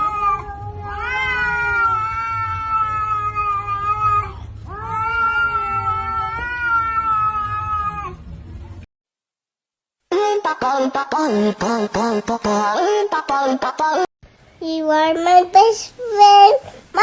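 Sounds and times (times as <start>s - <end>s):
cat yowling: 0.0s - 8.2s.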